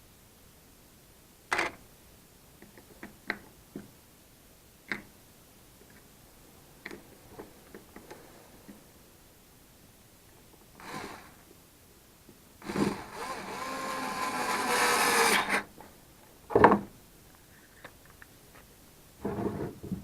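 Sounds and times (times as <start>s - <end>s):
small power-tool motor running: 10.8s - 11.3s, 12.6s - 15.6s.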